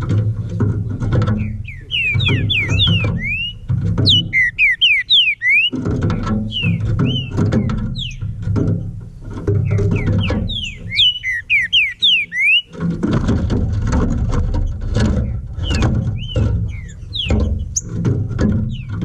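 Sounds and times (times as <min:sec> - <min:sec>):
bird singing whistled notes: 0:01.4 - 0:05.8, 0:06.4 - 0:08.3, 0:09.6 - 0:12.7, 0:15.2 - 0:18.0, 0:18.6 - 0:19.0.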